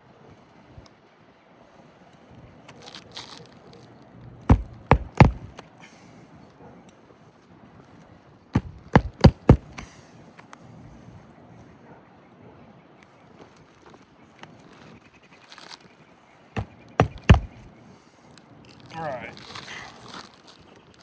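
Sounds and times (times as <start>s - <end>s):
hammer striking roofing nails: 4.5s - 5.6s, 8.6s - 9.9s, 16.6s - 17.7s.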